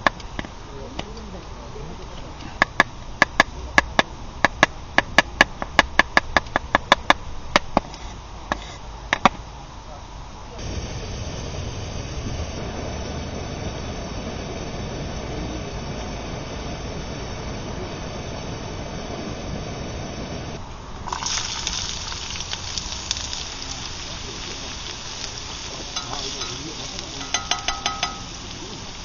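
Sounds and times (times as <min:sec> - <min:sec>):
steady hiss: 0:00.0 - 0:29.0.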